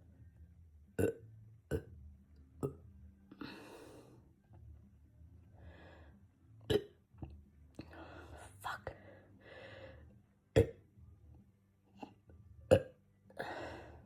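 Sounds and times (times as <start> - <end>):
man burping: 1.0 - 1.9, 6.7 - 6.9, 12.7 - 13.0.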